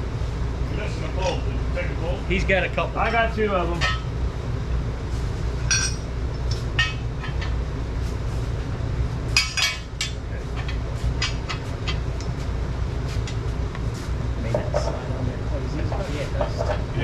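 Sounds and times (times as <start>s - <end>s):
steady low hum: 0.0s - 17.0s
metal hardware clinking: 5.7s - 7.4s.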